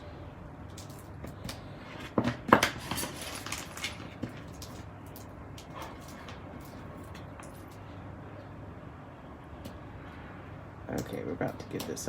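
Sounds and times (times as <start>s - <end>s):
plastic packaging crackling: 2.5s - 5.3s.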